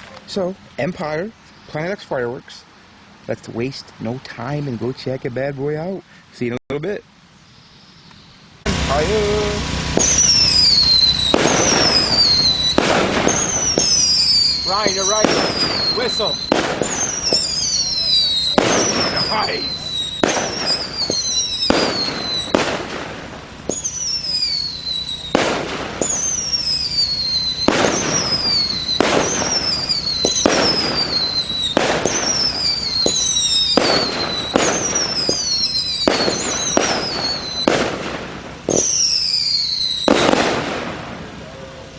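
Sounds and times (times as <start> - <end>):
firework whistling tails: 7.5 - 41.9
firework bangs: 8.6 - 41.6.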